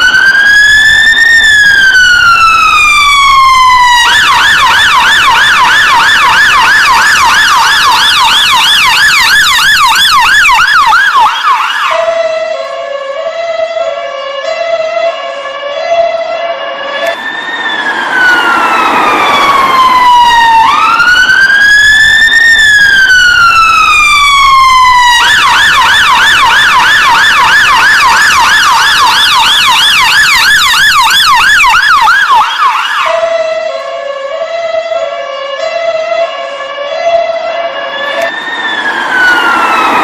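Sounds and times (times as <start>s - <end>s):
ambulance siren: 0.0s - 40.0s.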